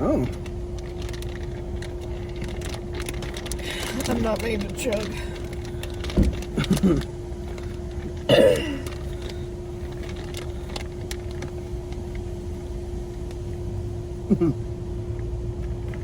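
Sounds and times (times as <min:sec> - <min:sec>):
car cabin drone: 0:00.0 - 0:16.0
person burping loudly: 0:08.3 - 0:09.0, 0:14.3 - 0:14.6.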